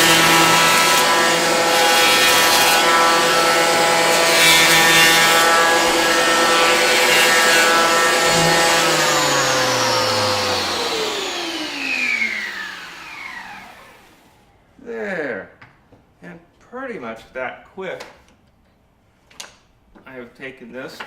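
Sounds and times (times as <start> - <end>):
electric hand planer cutting wood: 0.0 - 14.3
motor whine winding down: 4.8 - 14.4.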